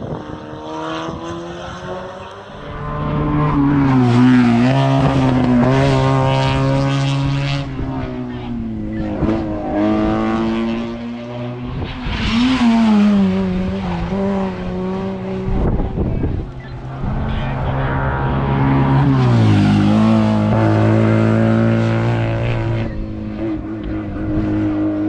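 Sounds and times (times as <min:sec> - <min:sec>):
race car engine revving: 0:00.0 - 0:25.0.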